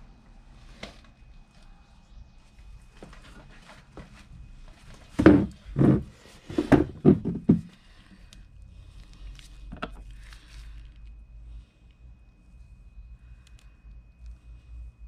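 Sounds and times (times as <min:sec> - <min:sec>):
knocks: 0:05.2 - 0:07.7.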